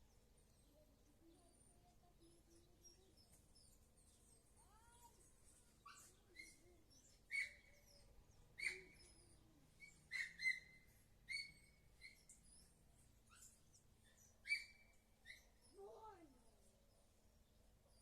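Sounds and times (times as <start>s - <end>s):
bird chirping: 0.0s - 18.0s.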